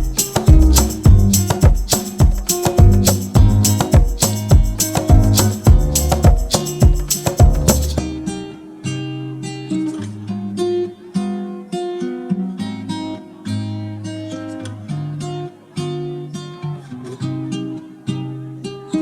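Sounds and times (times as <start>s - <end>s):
loud beat: 0.0s - 8.2s
acoustic guitar music: 0.0s - 19.0s.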